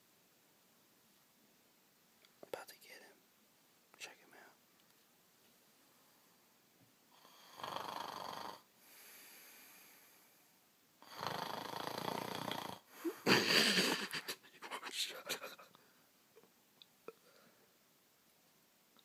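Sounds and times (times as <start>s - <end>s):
man snoring: 7.2s - 8.6s, 11.0s - 14.1s.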